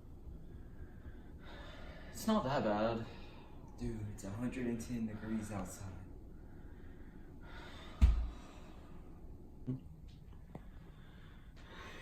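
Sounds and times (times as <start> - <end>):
person breathing heavily: 0.3 - 2.2, 6.5 - 9.1, 10.6 - 12.0
dull thump: 8.0 - 8.4.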